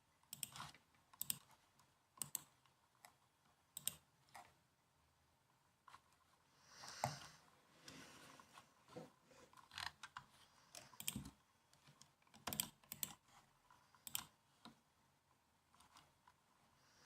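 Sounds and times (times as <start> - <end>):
laptop keyboard typing: 0.3 - 1.5, 2.2 - 2.6, 3.8 - 4.4, 9.7 - 11.4, 12.0 - 13.2, 14.0 - 14.4.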